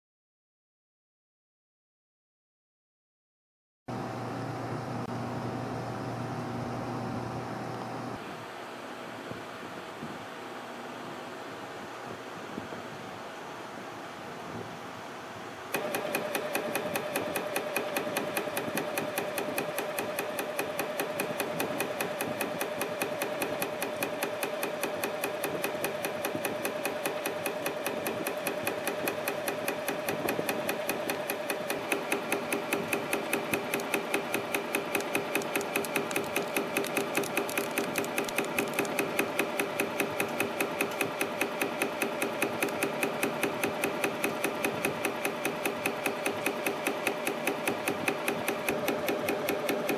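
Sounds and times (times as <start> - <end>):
steady motor hum: 3.9 - 49.9
spring coiling machine ticking: 15.7 - 49.9.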